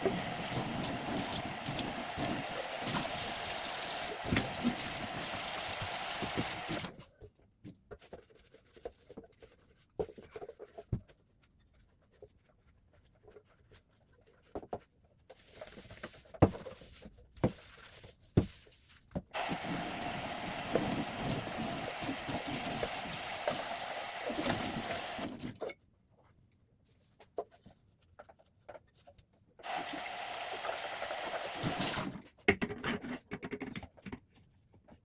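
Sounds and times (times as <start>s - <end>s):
water running: 0.0s - 6.9s, 19.4s - 25.6s, 29.6s - 32.2s
items clicking and knocking: 31.7s - 35.0s.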